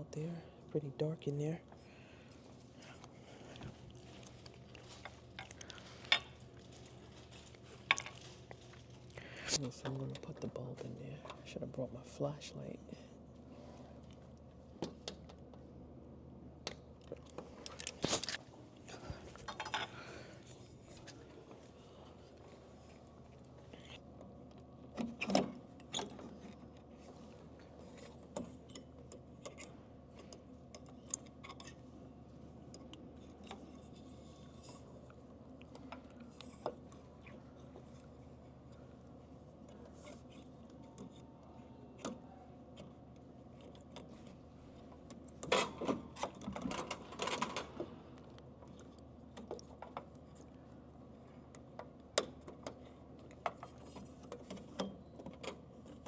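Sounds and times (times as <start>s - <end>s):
low steady hum: 0.0s - 56.0s
clicks and rattles in vending machine: 45.1s - 48.0s.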